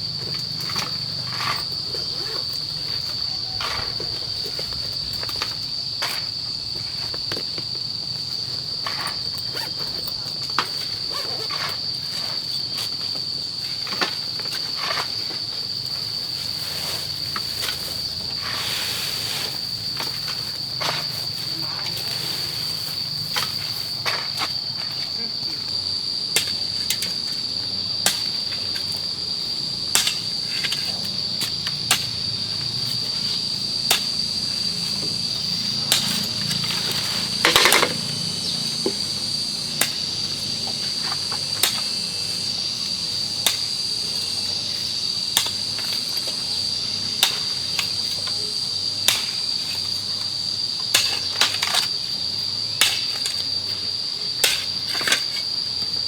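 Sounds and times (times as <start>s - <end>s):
insects droning: 0.0s - 56.0s
scraping rustle: 8.8s - 25.0s.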